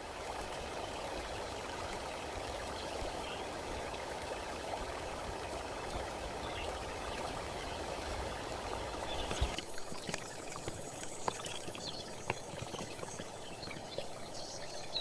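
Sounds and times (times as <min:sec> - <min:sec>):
running water rushing: 0:00.0 - 0:15.0.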